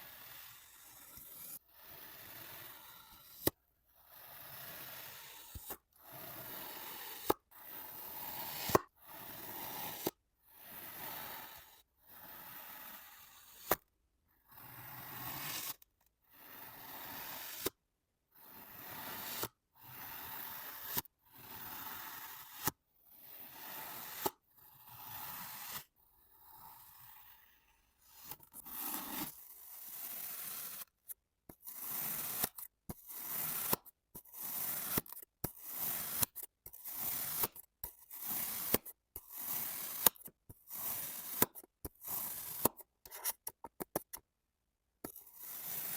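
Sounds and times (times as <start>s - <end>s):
grainy scrape of sand being cut: 0.0s - 44.2s, 45.0s - 45.9s.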